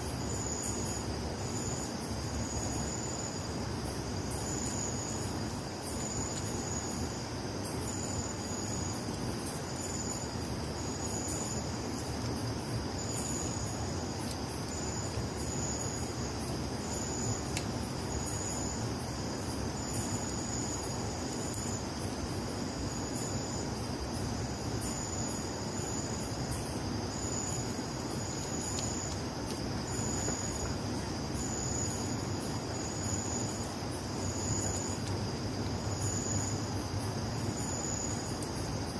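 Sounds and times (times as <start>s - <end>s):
crickets trilling: 0.0s - 38.9s
insect short chirps: 0.0s - 38.9s.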